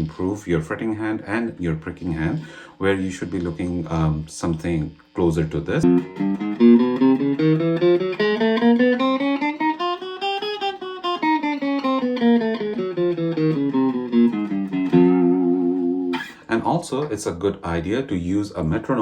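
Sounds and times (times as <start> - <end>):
electric guitar picked notes: 5.8 - 16.5.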